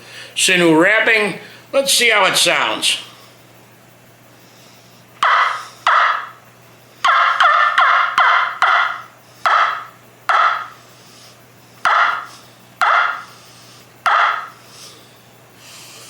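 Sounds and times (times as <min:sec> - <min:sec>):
turkey call yelping notes: 0:05.2 - 0:06.3, 0:07.0 - 0:10.7, 0:11.8 - 0:13.3, 0:14.1 - 0:14.6.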